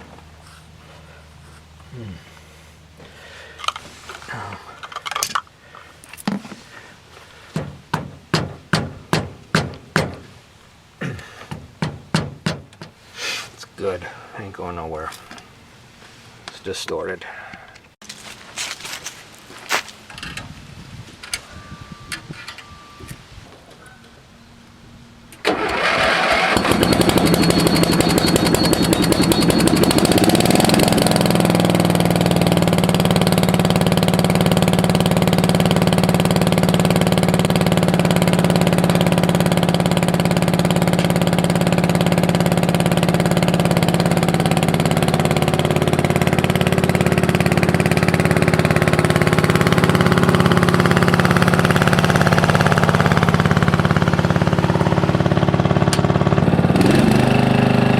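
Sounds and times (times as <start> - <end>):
lawn tractor engine starting: 25.3 - 57.9.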